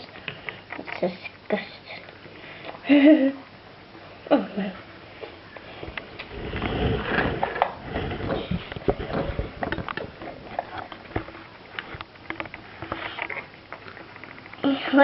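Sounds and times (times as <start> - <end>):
handling rumble: 6.0 - 13.1.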